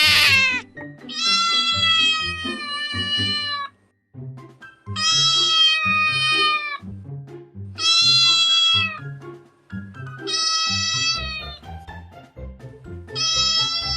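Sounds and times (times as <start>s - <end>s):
cat meowing: 0.0s - 3.8s, 5.0s - 6.8s, 7.8s - 9.0s, 10.2s - 11.6s, 13.2s - 13.9s
background music with bass line: 6.0s - 13.9s.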